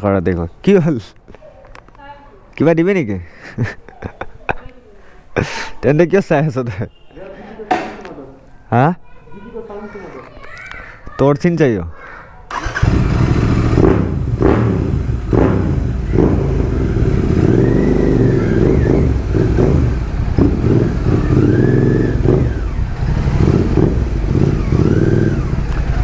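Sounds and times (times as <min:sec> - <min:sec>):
motorcycle engine revving: 0:12.5 - 0:26.0.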